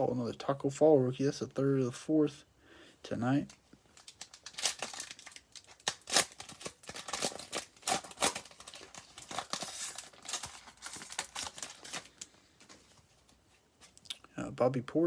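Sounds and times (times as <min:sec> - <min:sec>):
cards rustling: 0:03.4 - 0:14.0
foil wrapper crinkling and tearing: 0:03.9 - 0:12.3.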